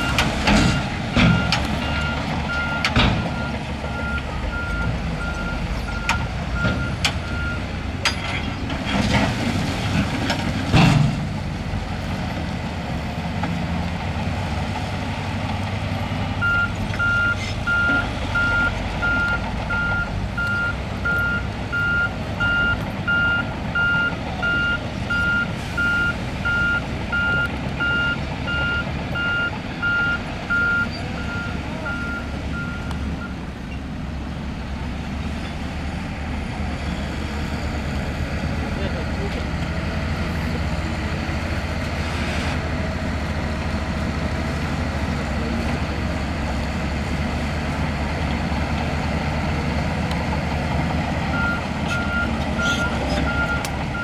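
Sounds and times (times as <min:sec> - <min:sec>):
diesel engine running: 0:00.0 - 0:54.0
reversing alarm beeping: 0:16.4 - 0:33.4, 0:51.3 - 0:54.0.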